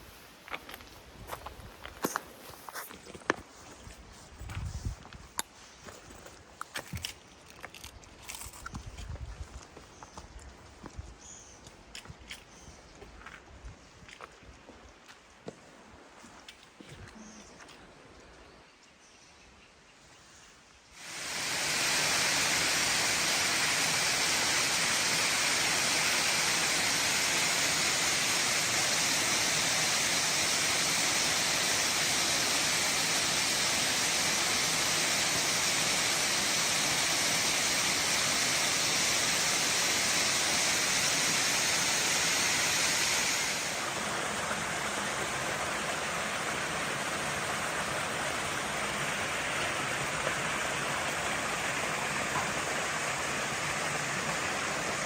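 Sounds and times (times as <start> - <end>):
rushing water: 21.0 - 55.0.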